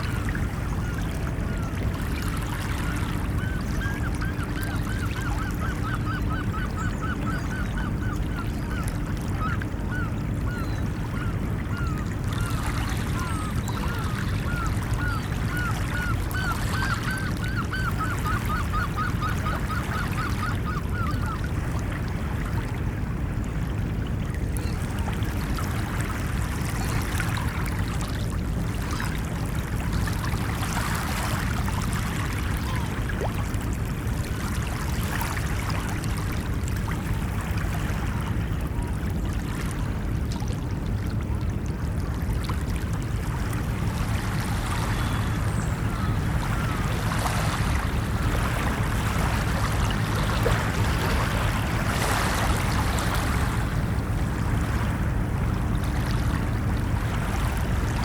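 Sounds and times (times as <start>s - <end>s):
bird calling repeated notes: 2.5s - 21.5s, 44.8s - 53.2s
ocean surf: 43.3s - 58.0s.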